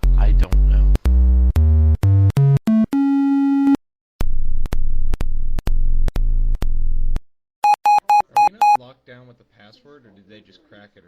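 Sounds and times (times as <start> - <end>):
synthesized beep tones: 7.6 - 8.8.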